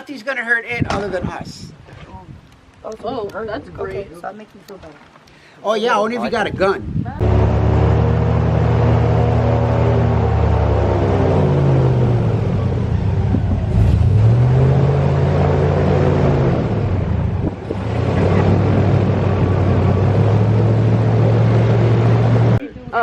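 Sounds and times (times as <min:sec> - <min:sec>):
airboat engine and propeller: 0:07.2 - 0:22.6.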